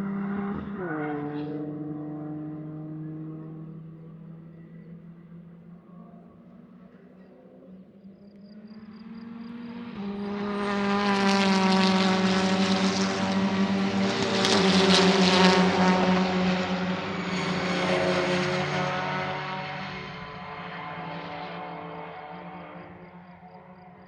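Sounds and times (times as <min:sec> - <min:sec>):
race car passing at speed: 0:00.0 - 0:06.8, 0:07.7 - 0:24.0.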